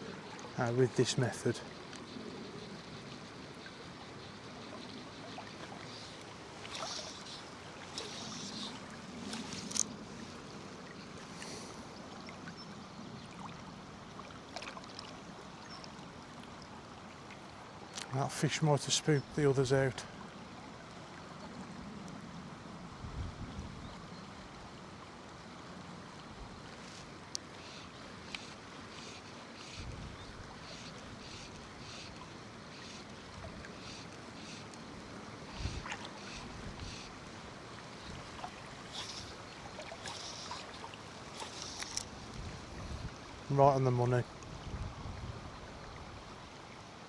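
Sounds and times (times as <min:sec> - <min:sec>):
river water flowing: 0:00.0 - 0:23.2, 0:23.9 - 0:47.0
wind buffeting microphone: 0:42.2 - 0:43.2, 0:44.5 - 0:46.3.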